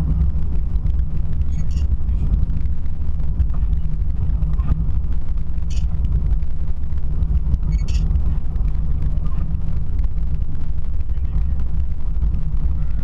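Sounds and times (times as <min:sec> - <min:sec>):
vehicle rumbling: 0:00.0 - 0:13.0
high squeak: 0:07.7 - 0:08.0.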